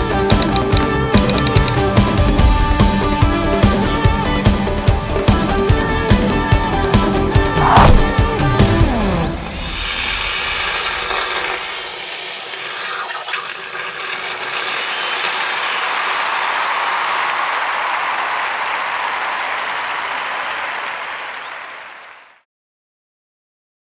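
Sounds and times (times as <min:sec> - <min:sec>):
dental drill whine: 0:00.3 - 0:01.9, 0:09.3 - 0:18.0.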